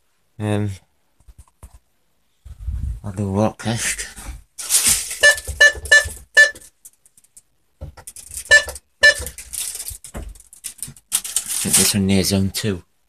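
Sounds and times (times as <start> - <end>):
keypad beeps: 5.2 - 6.6, 8.5 - 9.4.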